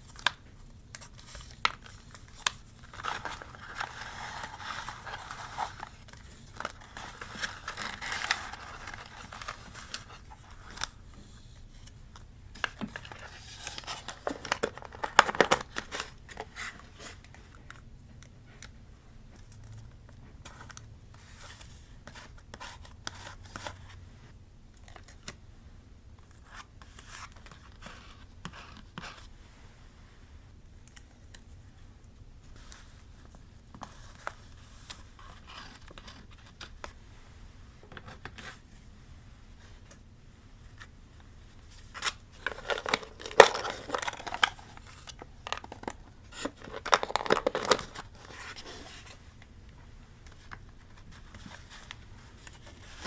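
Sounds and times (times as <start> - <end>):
paper rustling and crinkling: 0.0 - 18.7, 32.4 - 37.0, 40.6 - 49.5, 50.2 - 53.0.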